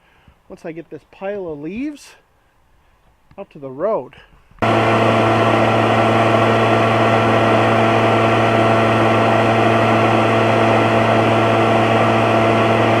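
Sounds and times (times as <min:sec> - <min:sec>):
air rushing from blower tube: 0:04.6 - 0:13.0
leaf blower engine drone: 0:04.6 - 0:13.0.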